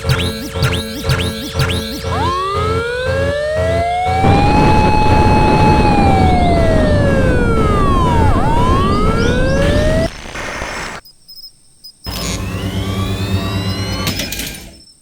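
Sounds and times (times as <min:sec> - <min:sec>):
siren-like wail: 0:00.0 - 0:11.0
flame jets rushing: 0:04.2 - 0:11.0.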